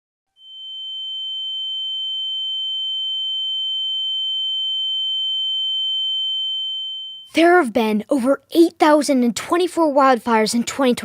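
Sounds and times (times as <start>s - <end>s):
fainter lower tone: 0.4s - 7.4s
high-pitched electronic tone: 0.4s - 7.4s.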